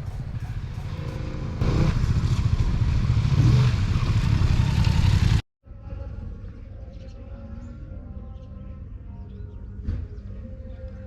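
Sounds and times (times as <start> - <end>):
motorcycle engine running: 0.0 - 5.4.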